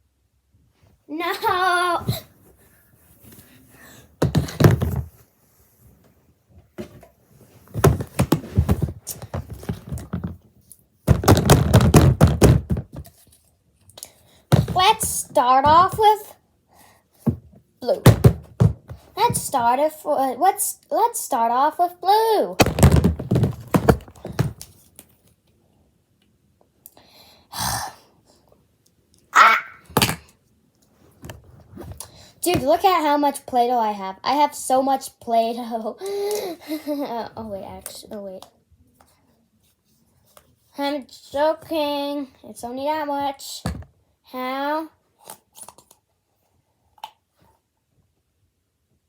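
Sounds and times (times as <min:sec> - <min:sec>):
objects knocking and thudding: 0:04.2 - 0:05.2, 0:06.8 - 0:10.5, 0:11.1 - 0:13.3, 0:14.5 - 0:16.1, 0:17.2 - 0:19.7, 0:22.6 - 0:24.8, 0:43.6 - 0:43.9
rustling: 0:06.8 - 0:13.5, 0:22.6 - 0:25.0.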